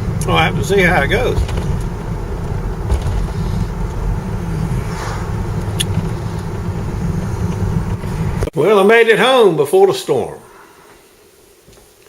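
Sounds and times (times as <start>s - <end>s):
truck engine and tyres rumbling: 0.0s - 8.6s.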